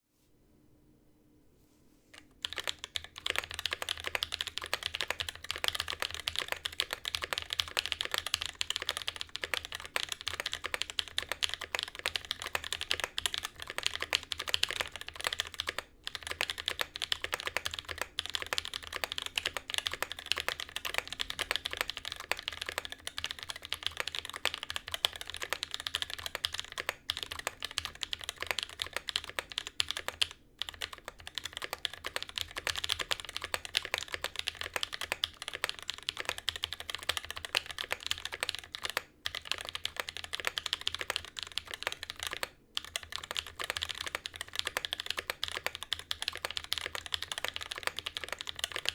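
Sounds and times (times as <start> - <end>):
fast typing on mechanical keyboard: 2.2 - 48.9.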